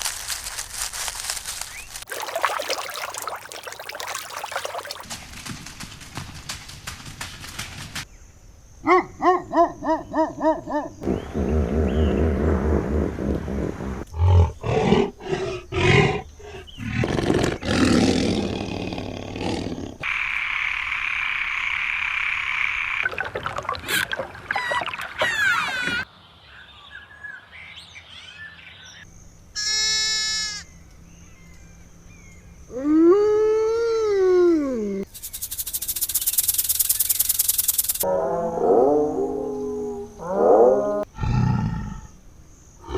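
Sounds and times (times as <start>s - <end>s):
rising and falling animal call: 23.8s - 26.1s
shrill high cries: 24.5s - 26.0s.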